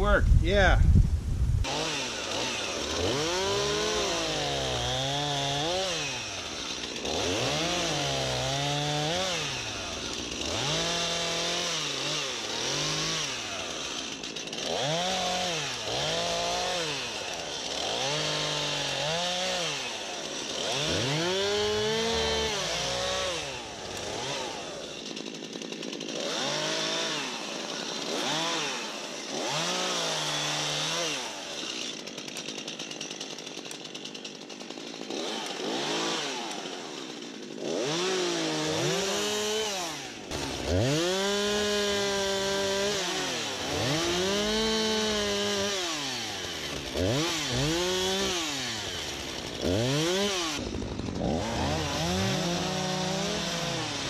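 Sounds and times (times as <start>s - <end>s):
chainsaw revving while cutting: 1.6s - 54.0s.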